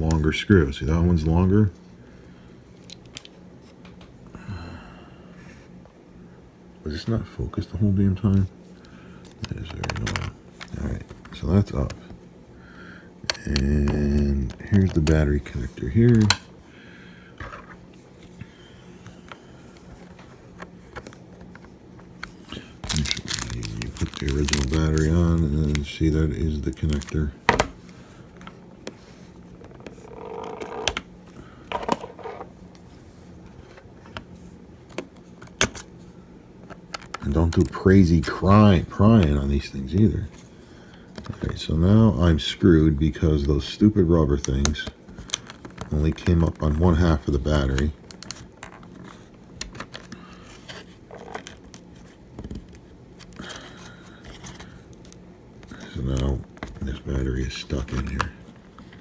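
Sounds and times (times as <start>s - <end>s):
faint low hum: 0.0s - 59.0s.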